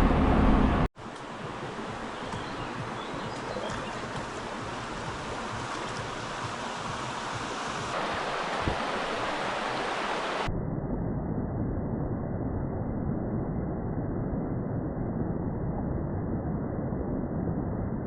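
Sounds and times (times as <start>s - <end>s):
river water rushing: 1.0s - 10.5s.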